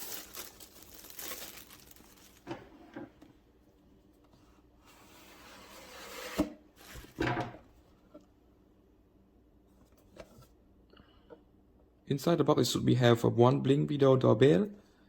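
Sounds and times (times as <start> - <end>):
packaging rustling: 0.0 - 2.5
scrape on box: 4.8 - 7.0.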